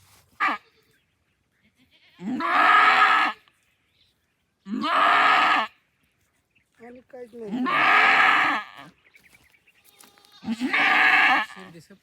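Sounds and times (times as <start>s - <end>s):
goat bleating: 0.4s - 1.0s, 1.6s - 3.5s, 4.7s - 5.8s, 7.5s - 8.9s, 9.8s - 11.7s.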